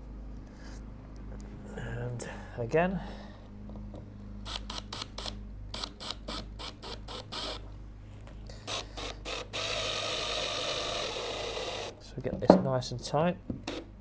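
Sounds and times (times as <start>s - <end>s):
screwdriver driving screw into wood: 8.7s - 11.9s, 13.6s - 13.9s.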